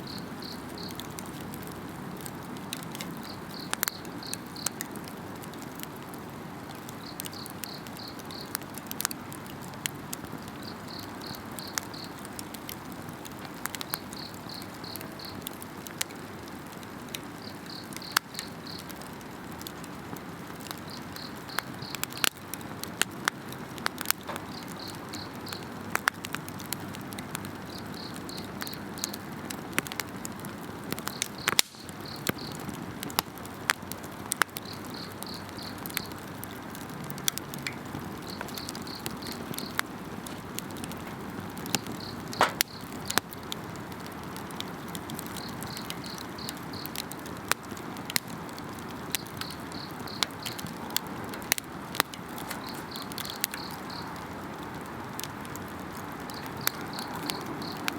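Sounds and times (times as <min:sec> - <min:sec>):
insect chirping: 0:00.0 - 0:01.0, 0:34.6 - 0:36.1, 0:38.2 - 0:39.8, 0:41.7 - 0:42.9, 0:49.2 - 0:50.5, 0:52.5 - 0:54.2
campfire crackling and popping: 0:00.0 - 0:57.9.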